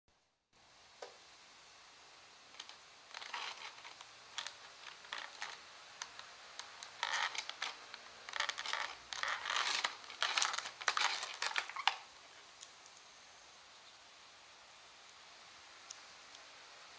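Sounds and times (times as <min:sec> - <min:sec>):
plastic crinkling and clicks: 0:02.6 - 0:13.1.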